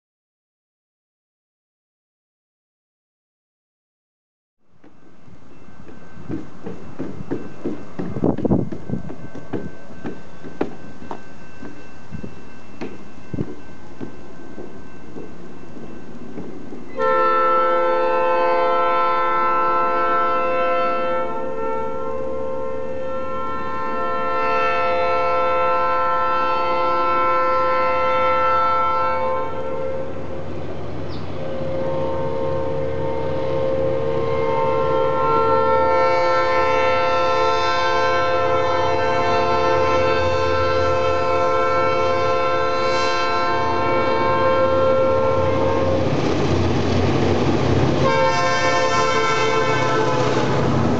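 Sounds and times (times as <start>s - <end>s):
low rumble of train: 4.6s - 50.9s
locomotive air horns sounding chords: 16.9s - 30.5s, 31.3s - 46.3s, 48.0s - 50.9s.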